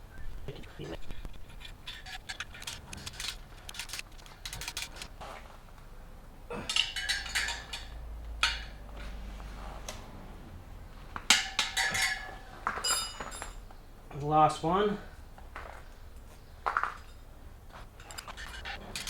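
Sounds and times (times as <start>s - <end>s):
metal tools clinking: 1.4s - 5.1s, 6.6s - 8.8s, 11.3s - 13.6s, 18.0s - 19.0s.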